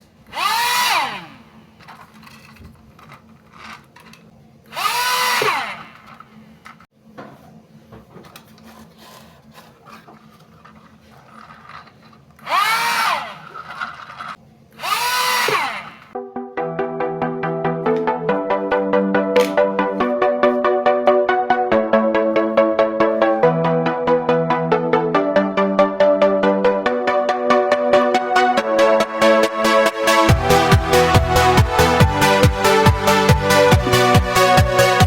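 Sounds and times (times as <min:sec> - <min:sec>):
small electric motor whirring: 0:00.3 - 0:06.8, 0:10.7 - 0:16.2.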